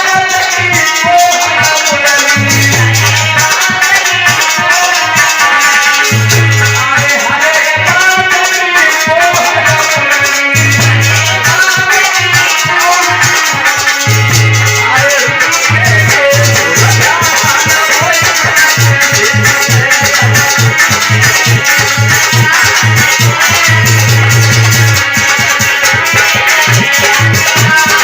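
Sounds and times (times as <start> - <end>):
rattling percussion: 0.0 - 28.0
low drum beat: 14.1 - 21.3.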